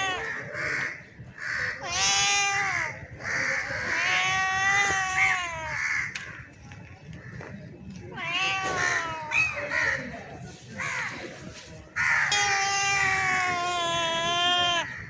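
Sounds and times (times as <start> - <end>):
cat meowing: 0.0 - 0.4, 1.7 - 3.0, 3.8 - 5.8, 8.1 - 9.6, 12.3 - 15.0.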